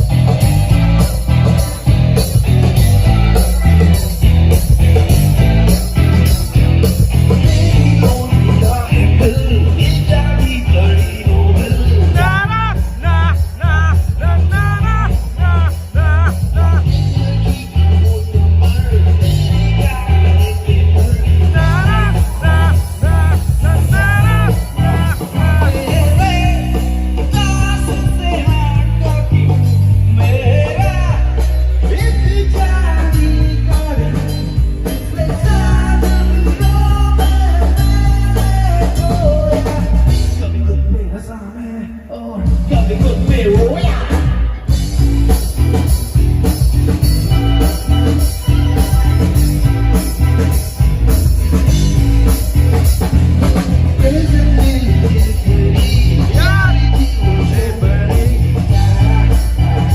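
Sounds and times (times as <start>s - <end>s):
vibrato lead melody: 0.0s - 38.8s
live rock band playing: 0.0s - 59.9s.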